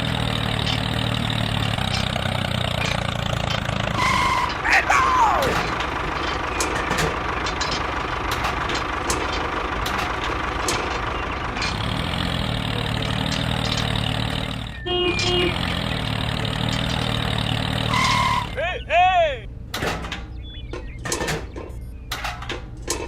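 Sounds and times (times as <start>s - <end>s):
engine idling: 0.0s - 23.0s
short tones: 17.8s - 19.5s.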